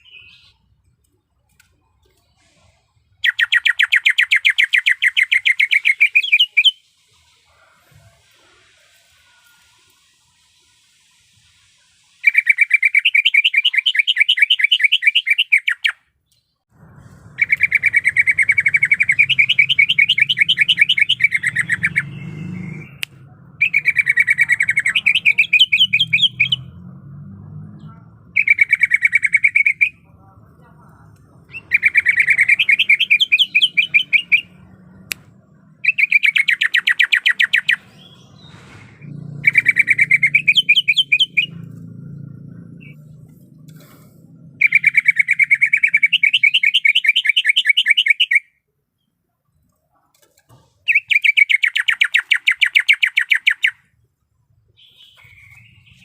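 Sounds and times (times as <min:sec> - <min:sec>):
bird singing trilled notes: 0:00.0 - 0:01.3, 0:03.1 - 0:07.3, 0:12.2 - 0:16.6, 0:17.4 - 0:30.3, 0:31.2 - 0:43.6, 0:44.3 - 0:49.2, 0:50.9 - 0:54.0, 0:54.8 - 0:56.0.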